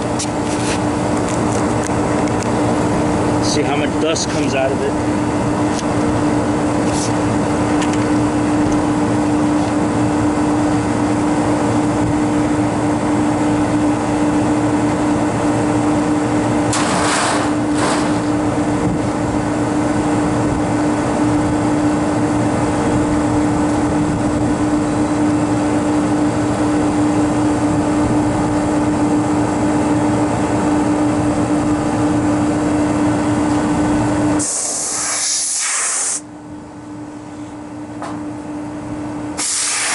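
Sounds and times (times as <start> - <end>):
condensing unit humming: 0.0 - 39.9
short hissing air blasts: 34.4 - 36.2, 39.4 - 39.9.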